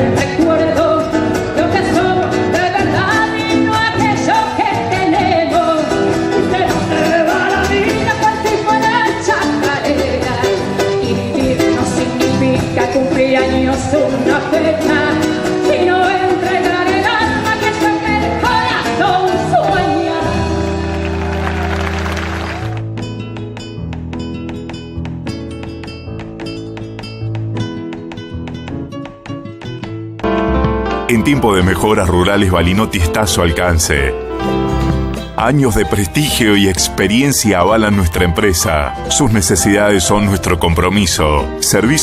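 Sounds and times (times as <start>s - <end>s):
person singing folk song: 0.0s - 20.9s
instrumental accompaniment: 20.0s - 42.0s.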